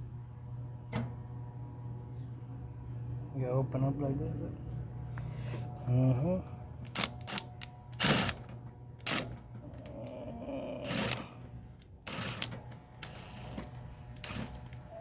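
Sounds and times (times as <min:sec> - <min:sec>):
steady low hum: 0:00.0 - 0:15.0
tools and metal parts clicking: 0:06.8 - 0:10.0, 0:10.9 - 0:15.0.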